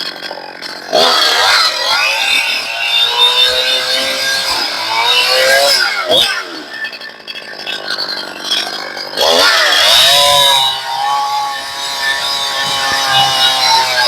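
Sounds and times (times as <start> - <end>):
chainsaw cutting log: 0.0 - 14.0.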